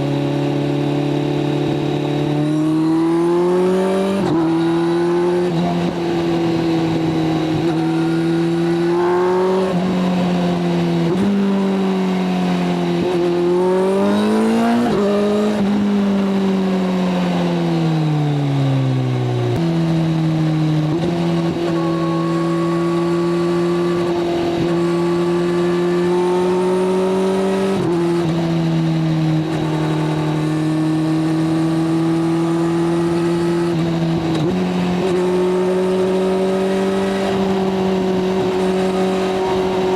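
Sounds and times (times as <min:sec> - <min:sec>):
motorcycle engine running: 0:00.0 - 0:39.9.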